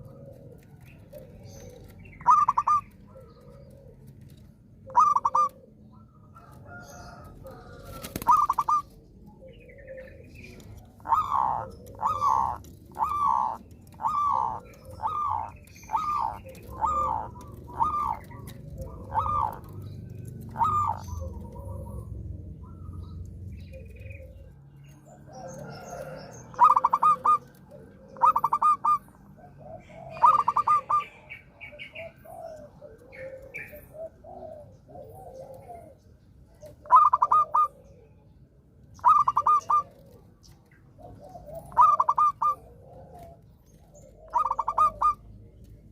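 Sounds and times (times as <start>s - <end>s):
softer bird calls: 0.0s - 38.3s, 38.9s - 45.9s
dove cooing: 0.0s - 45.9s.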